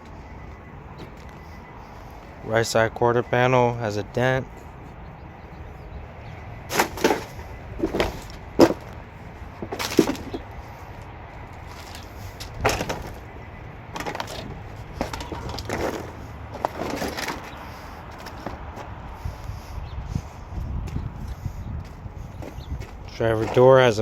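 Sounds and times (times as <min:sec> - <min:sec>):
footsteps scuffing: 0:06.7 - 0:09.0, 0:21.8 - 0:23.8.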